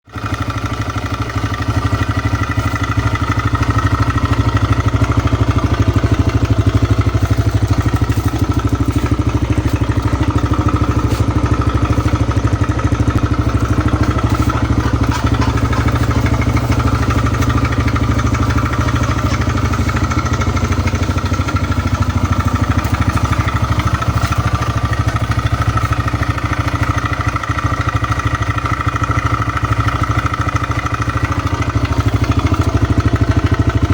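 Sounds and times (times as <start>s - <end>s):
motorcycle engine idling: 0.0s - 33.9s.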